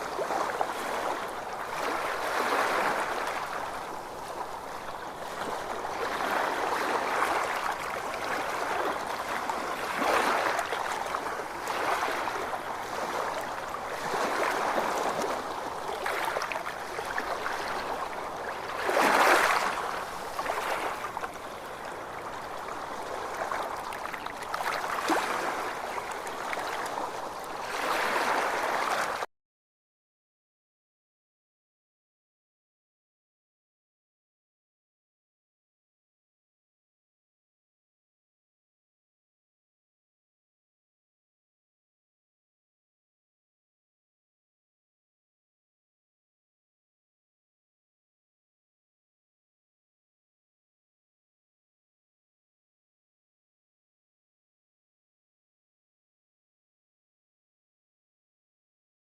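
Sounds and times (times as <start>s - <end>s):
ocean waves washing in: 0.0s - 29.3s.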